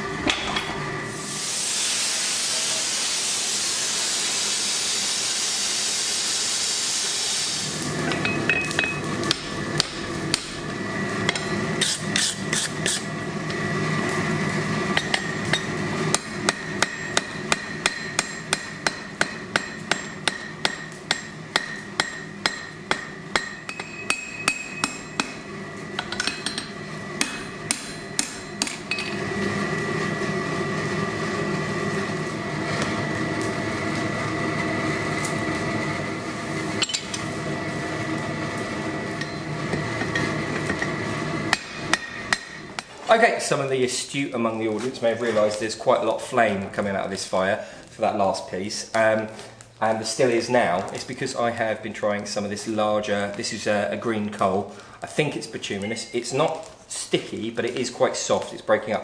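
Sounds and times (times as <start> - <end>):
loud hiss: 1.0 - 8.0
hammer striking steel on anvil: 8.1 - 10.6, 11.3 - 13.0, 14.9 - 25.4, 26.0 - 29.2, 36.8 - 37.2, 39.2 - 40.9, 41.5 - 42.9.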